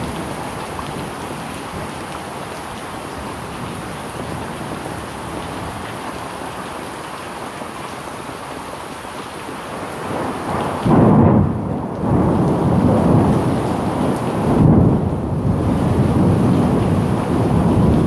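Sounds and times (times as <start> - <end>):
steady rain falling: 0.0 - 18.0
thunder rumbling: 10.1 - 18.0.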